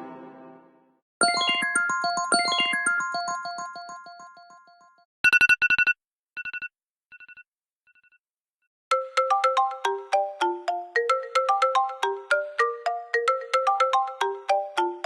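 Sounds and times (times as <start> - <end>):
melodic ringtone: 1.2 - 5.1, 8.9 - 15.0
quick melodic ringtone: 1.2 - 5.1, 8.9 - 15.0
rapid high beeps: 5.2 - 7.4.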